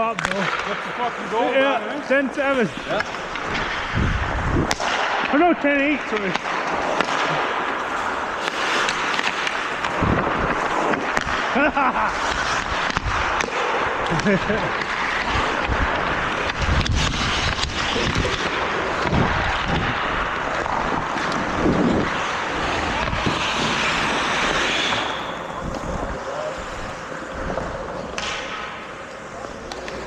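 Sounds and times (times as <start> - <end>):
wind rushing over microphone: 2.3 - 4.9, 9.7 - 14.7, 15.3 - 27.9
hockey sticks and puck knocking: 6.1 - 30.0.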